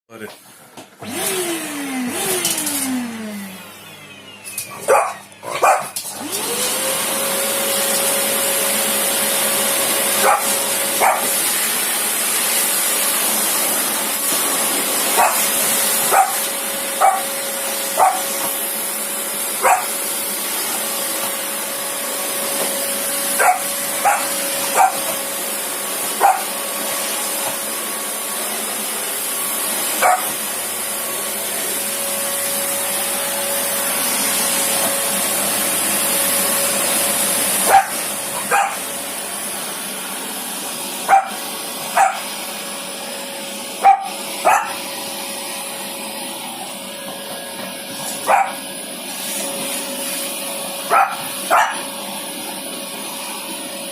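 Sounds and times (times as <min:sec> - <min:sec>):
vacuum cleaner motor: 0:00.3 - 0:53.9
puppy barking: 0:04.8 - 0:06.0, 0:10.1 - 0:11.4, 0:15.1 - 0:17.3, 0:17.9 - 0:18.4, 0:19.6 - 0:20.0, 0:23.3 - 0:25.2, 0:26.2 - 0:26.5, 0:30.0 - 0:30.4, 0:37.6 - 0:38.9, 0:41.1 - 0:42.3, 0:43.8 - 0:44.8, 0:48.2 - 0:48.6, 0:50.9 - 0:51.9.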